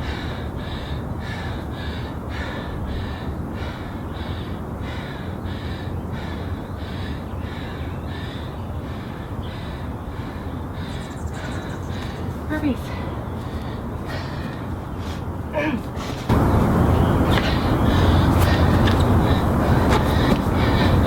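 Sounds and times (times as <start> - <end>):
person breathing hard: 0.0 - 16.5, 17.2 - 21.0
steady low rumble: 0.0 - 21.0.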